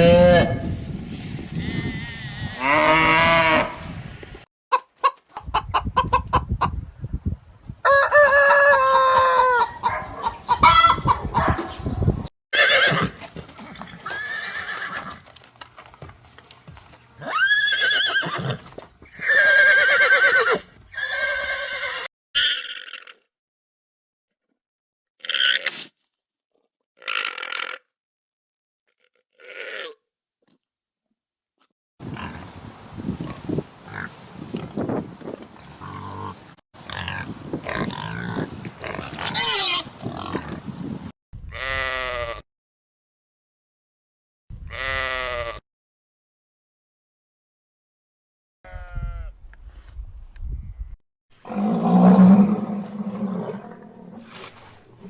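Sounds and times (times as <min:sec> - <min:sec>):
farm animals grunting and calling: 0:27.0 - 0:27.9, 0:29.0 - 0:30.0, 0:33.2 - 0:34.9, 0:35.6 - 0:40.8, 0:51.4 - 0:54.6.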